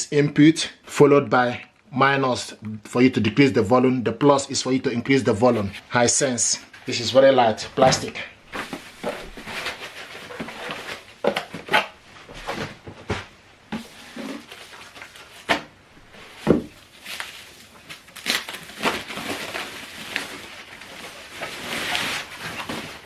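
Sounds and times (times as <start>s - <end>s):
plastic packaging rustling: 5.5s - 23.0s.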